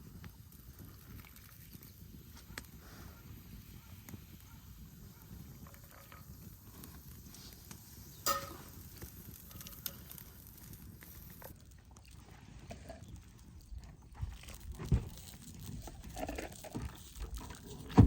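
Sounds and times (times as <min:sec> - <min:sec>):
sharp ringing clink: 0:08.2 - 0:08.8.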